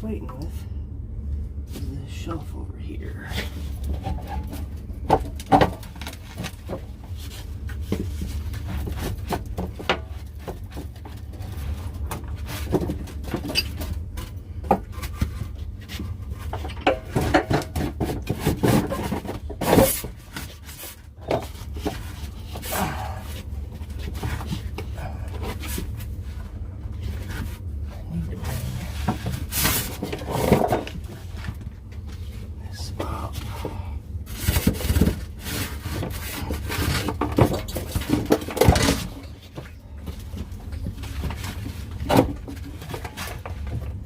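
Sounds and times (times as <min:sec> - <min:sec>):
low hum: 0:00.0 - 0:44.0
tools knocking and scraping: 0:07.7 - 0:22.7, 0:28.8 - 0:31.6.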